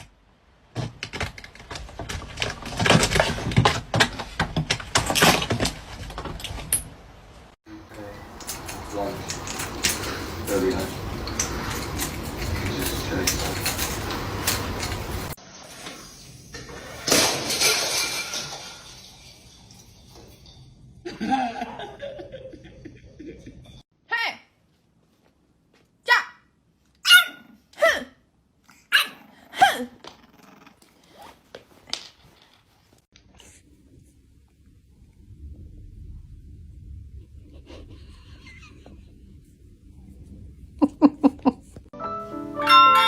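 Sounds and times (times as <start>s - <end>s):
clattering clicks and knocks: 8.3s - 15.4s
crash with clattering: 12.3s - 20.7s.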